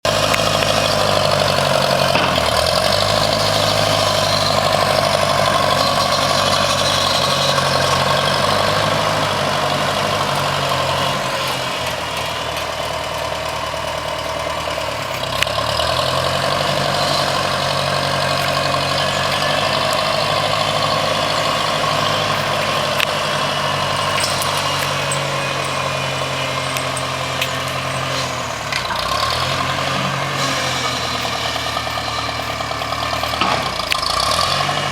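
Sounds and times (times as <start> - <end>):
engine running: 0.0 - 34.9.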